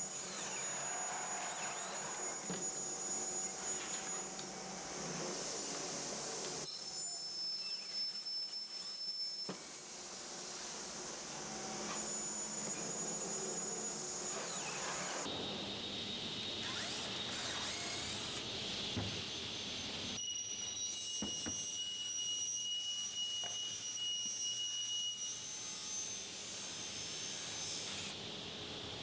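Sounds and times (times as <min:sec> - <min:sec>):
power drill whining: 0:00.0 - 0:15.3, 0:16.6 - 0:18.4.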